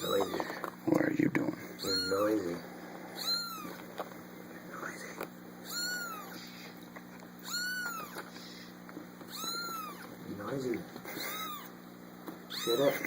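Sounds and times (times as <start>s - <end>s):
kitten meowing: 0.0s - 0.5s, 1.8s - 2.4s, 3.2s - 3.8s, 5.6s - 6.7s, 7.4s - 8.6s, 9.3s - 10.2s, 11.1s - 11.8s, 12.5s - 13.0s.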